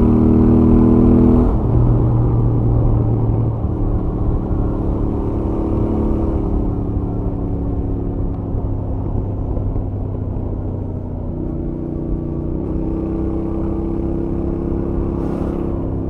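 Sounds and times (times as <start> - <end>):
motorcycle engine cruising: 0.0 - 16.0
wind rush: 12.5 - 16.0.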